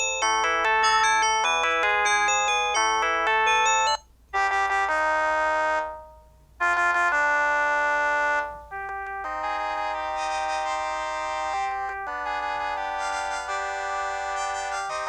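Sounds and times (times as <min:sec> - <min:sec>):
polyphonic phone ringtones: 0:00.0 - 0:04.8, 0:08.0 - 0:15.0.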